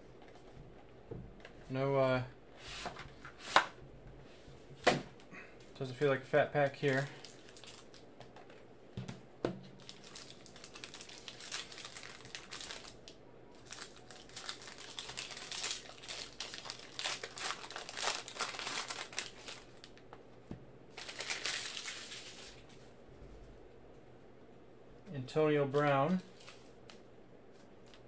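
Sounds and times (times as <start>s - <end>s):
card pack wrapper tearing and crinkling: 6.6s - 8.0s, 9.8s - 20.0s, 20.9s - 22.6s, 25.8s - 27.0s.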